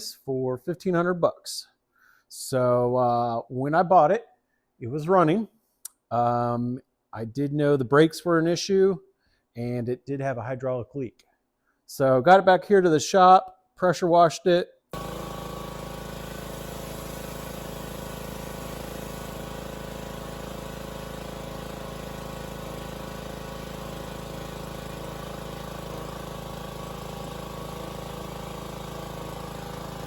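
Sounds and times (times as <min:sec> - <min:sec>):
engine running steadily: 0:15.0 - 0:30.0.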